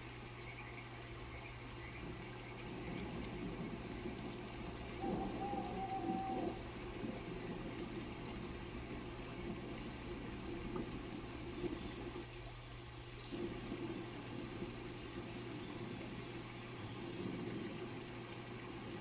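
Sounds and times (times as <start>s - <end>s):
constant low hum: 0.0s - 19.0s
steady rain: 0.0s - 19.0s.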